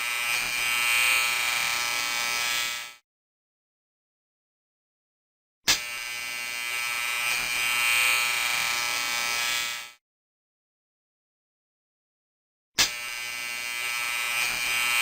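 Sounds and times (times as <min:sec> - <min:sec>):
electric shaver buzzing: 0:00.0 - 0:03.0, 0:05.7 - 0:10.0, 0:12.8 - 0:15.0.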